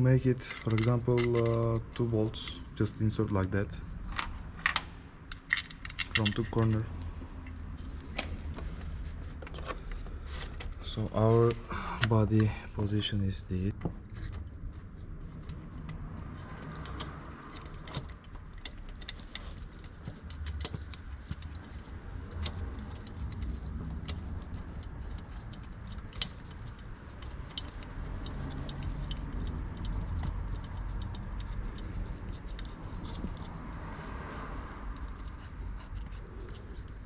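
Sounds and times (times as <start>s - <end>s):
small metallic clicks and clinks: 0.4s - 1.8s, 4.1s - 6.9s.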